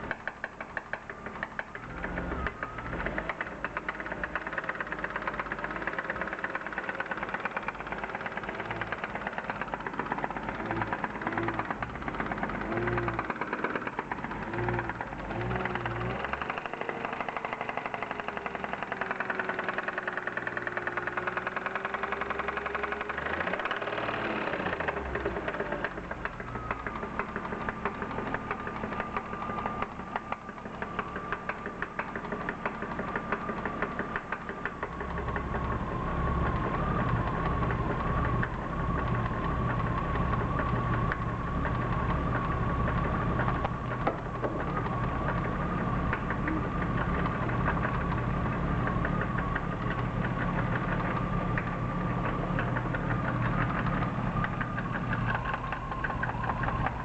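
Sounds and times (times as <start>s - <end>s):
engine running with rapid knocking: 0.0s - 57.0s
steady whine: 24.6s - 57.0s.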